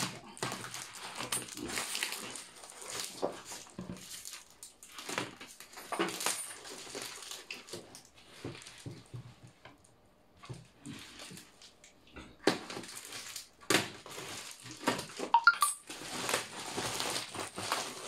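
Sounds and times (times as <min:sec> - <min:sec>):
tape and packing tearing: 0:15.9 - 0:18.0.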